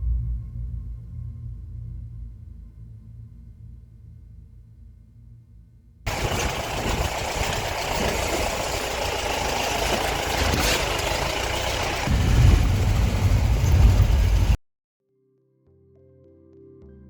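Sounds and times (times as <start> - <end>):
low rumble: 0.0 - 14.6
vehicle engine and road noise: 6.1 - 14.6.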